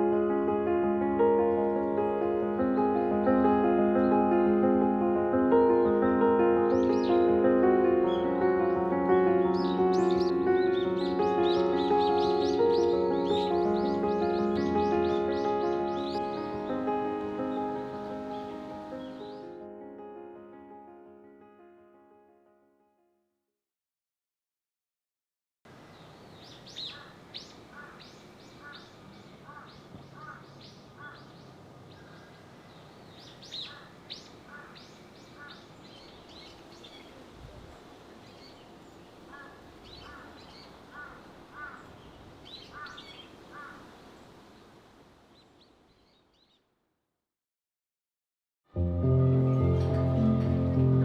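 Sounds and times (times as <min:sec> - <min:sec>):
birds chirping: 0:05.6 - 0:19.6, 0:25.7 - 0:46.7.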